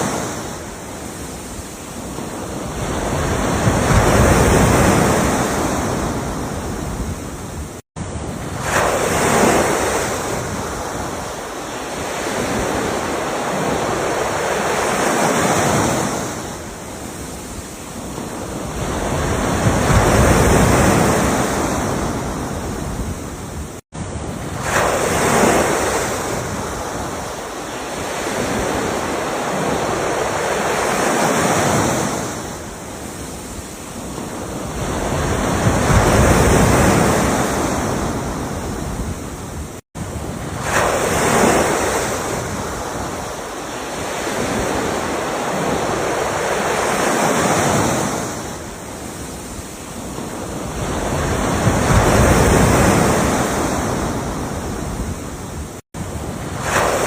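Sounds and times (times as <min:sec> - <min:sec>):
ocean waves breaking ashore: 0:00.0 - 0:57.0.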